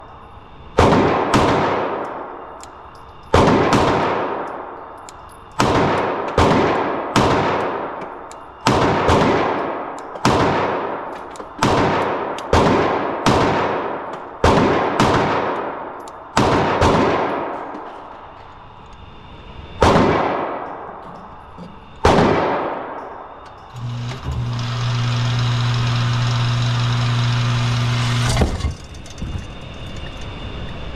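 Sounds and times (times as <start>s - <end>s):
steady low hum: 0.0s - 30.9s
pistol shots echoing: 0.8s - 2.5s, 3.3s - 4.8s, 5.6s - 17.8s, 19.8s - 21.0s, 22.0s - 23.4s.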